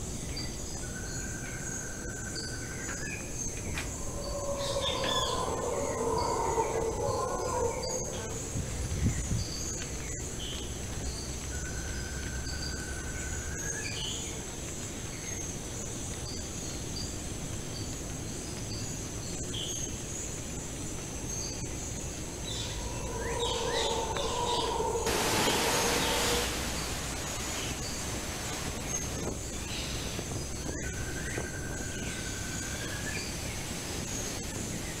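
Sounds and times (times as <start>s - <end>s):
high insect drone: 0.0s - 34.8s
birds chirping and whistling: 2.4s - 10.2s, 21.3s - 33.3s
hissing noise: 3.4s - 9.0s, 21.0s - 30.8s.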